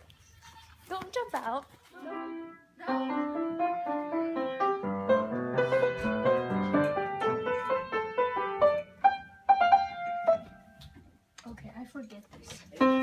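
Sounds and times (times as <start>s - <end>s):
piano music: 2.0s - 10.8s, 12.8s - 13.0s.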